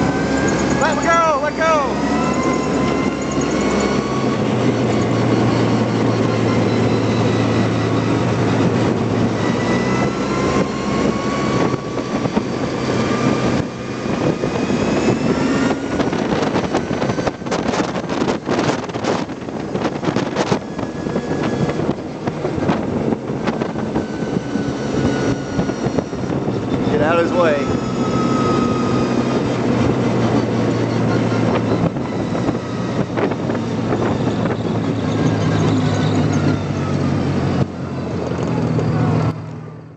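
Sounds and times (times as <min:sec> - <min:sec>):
wind rushing: 0:00.0 - 0:35.6
faint rising whine: 0:00.0 - 0:39.9
vehicle wheel noise: 0:00.0 - 0:39.9
sharp rattles and knocks: 0:02.2 - 0:04.0.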